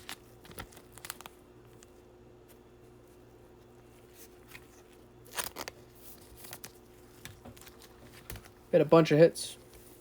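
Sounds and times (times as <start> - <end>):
trading cards clicking and rustling: 0.0 - 2.0
steady low hum: 0.0 - 10.0.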